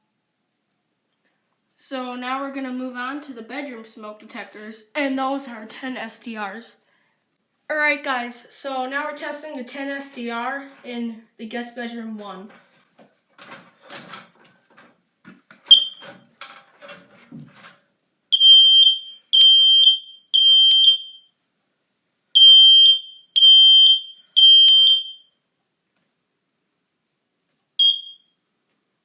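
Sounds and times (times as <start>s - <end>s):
loud high smoke alarm beeps: 15.7s - 16.0s, 18.3s - 21.3s, 22.4s - 25.4s, 27.8s - 28.4s
smoke alarm chirp: 15.7s - 16.0s, 18.3s - 21.3s, 22.4s - 25.3s, 27.8s - 28.4s.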